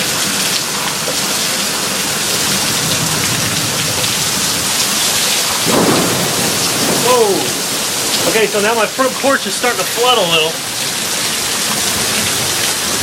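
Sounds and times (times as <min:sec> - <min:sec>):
heavy rain pouring: 0:00.0 - 0:13.0
thunder rumble: 0:02.4 - 0:09.7.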